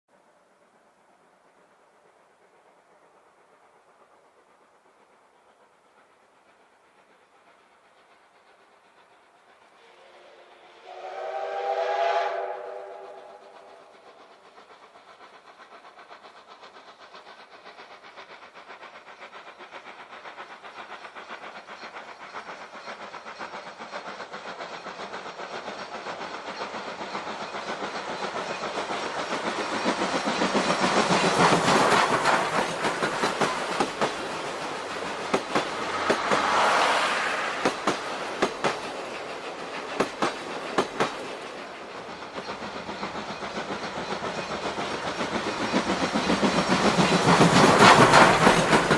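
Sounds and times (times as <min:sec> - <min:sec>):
steam locomotive passing: 0:00.1 - 0:48.9
wheels clicking over rail joints: 0:13.5 - 0:48.9.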